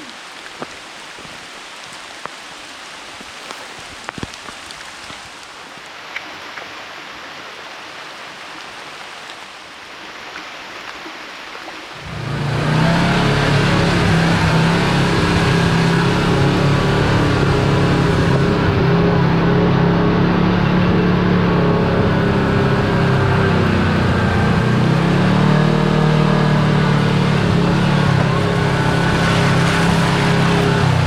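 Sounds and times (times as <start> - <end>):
rain falling: 0.0 - 31.0
utility vehicle engine running: 12.0 - 31.0.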